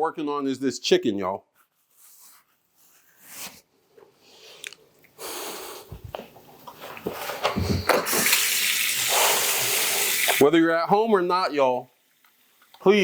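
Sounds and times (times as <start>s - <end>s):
sink tap running: 7.8s - 10.4s.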